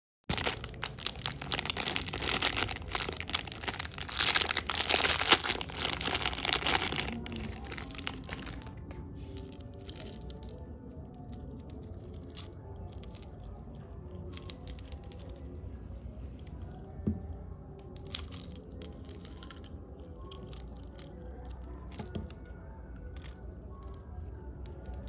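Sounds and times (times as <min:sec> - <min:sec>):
faint background music: 0:00.3 - 0:25.0
metal keychain jingling: 0:00.4 - 0:08.7, 0:09.4 - 0:10.5, 0:11.2 - 0:16.8, 0:18.0 - 0:22.4.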